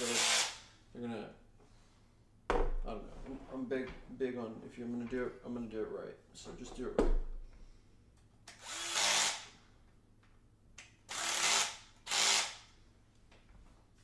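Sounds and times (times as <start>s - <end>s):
cordless drill running: 0.0s - 0.6s, 8.6s - 9.6s, 11.1s - 12.7s.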